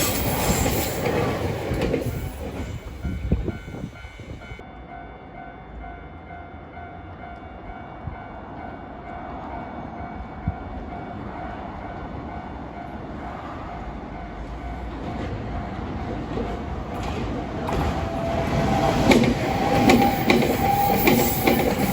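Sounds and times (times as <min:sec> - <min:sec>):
train rumbling on track: 0:00.0 - 0:21.9
rail joint clunks: 0:14.8 - 0:21.9.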